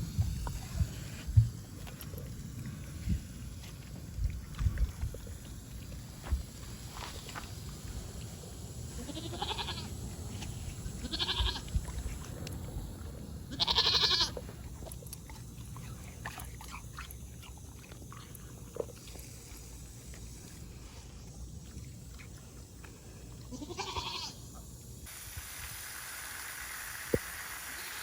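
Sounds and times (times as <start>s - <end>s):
goat bleating: 8.9s - 9.9s, 11.0s - 11.6s, 13.5s - 14.4s, 23.5s - 24.4s.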